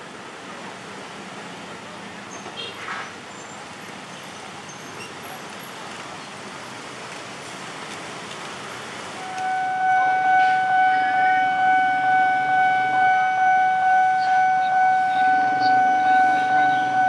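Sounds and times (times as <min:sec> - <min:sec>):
road traffic hiss: 0:00.0 - 0:17.0
level crossing alarm tone: 0:09.3 - 0:17.0.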